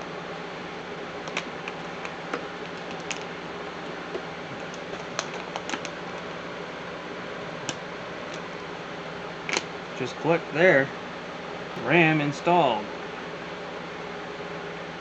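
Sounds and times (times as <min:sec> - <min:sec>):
steady low hum: 0:00.0 - 0:15.0
memory sticks clicking into slots: 0:04.6 - 0:06.0.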